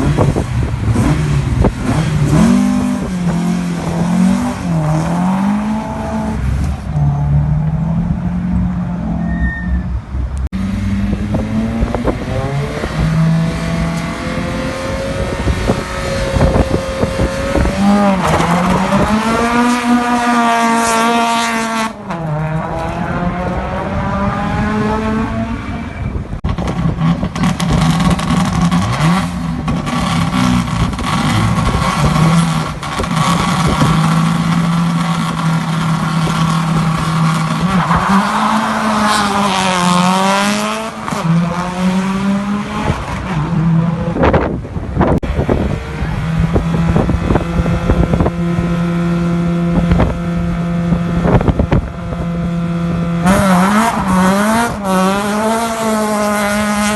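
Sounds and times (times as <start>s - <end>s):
rally car engines revving: 0.0s - 56.9s
exhaust crackles and pops: 26.4s - 29.0s, 29.6s - 38.0s.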